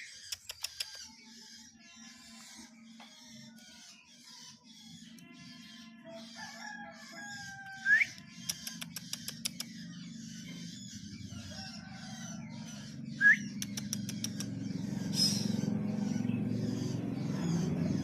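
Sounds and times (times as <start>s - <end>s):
bird clicks: 0.2s - 1.0s, 8.2s - 9.7s, 13.6s - 14.6s
bird chirping rapidly: 7.8s - 18.0s.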